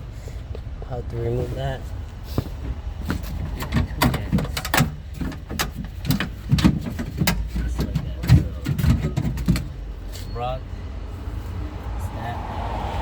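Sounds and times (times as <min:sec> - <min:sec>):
door lock clicks and rattles: 0:03.4 - 0:09.8.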